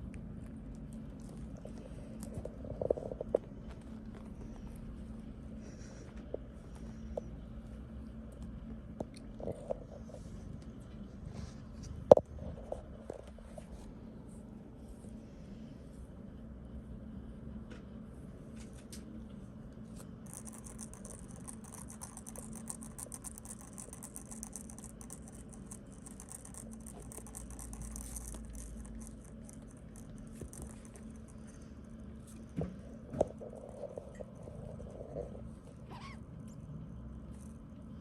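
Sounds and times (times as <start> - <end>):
steady low hum: 0.0 - 38.0
kitten claws scratching fabric: 19.9 - 32.6.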